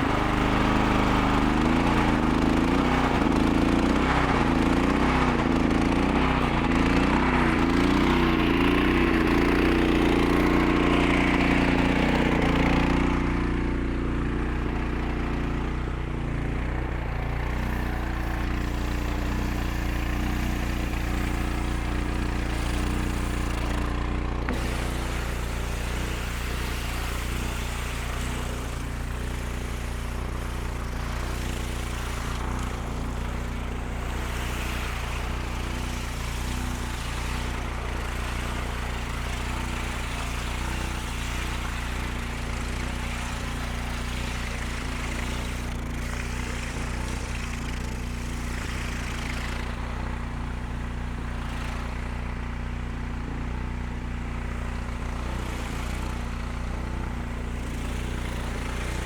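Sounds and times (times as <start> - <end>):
pressure washer motor droning: 0.0 - 59.0
water hissing under pressure: 17.5 - 49.3.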